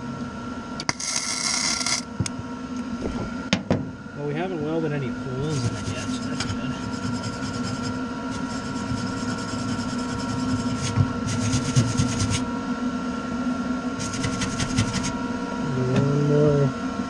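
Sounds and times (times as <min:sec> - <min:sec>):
machine hum: 0:00.0 - 0:17.0
welding crackling: 0:00.8 - 0:02.1.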